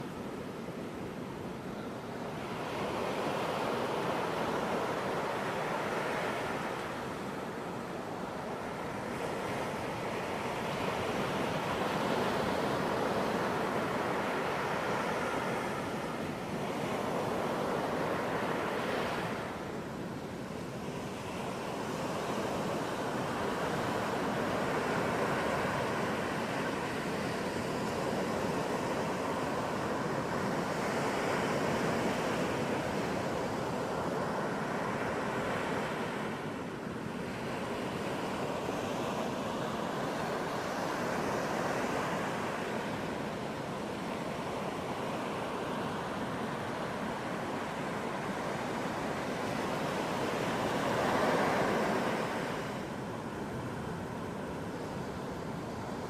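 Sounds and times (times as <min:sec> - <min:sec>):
ocean surf rushing: 0:20.9 - 0:56.0.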